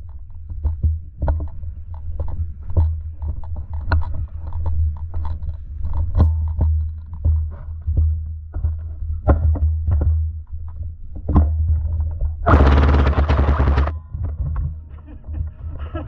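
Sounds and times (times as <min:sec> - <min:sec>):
steady low rumble: 0:12.5 - 0:14.1.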